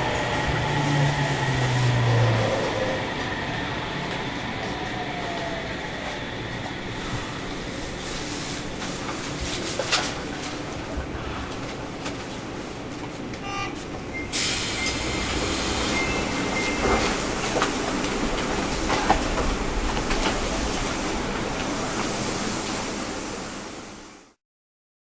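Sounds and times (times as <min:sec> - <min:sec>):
train doors hissing open: 0:13.4 - 0:24.4.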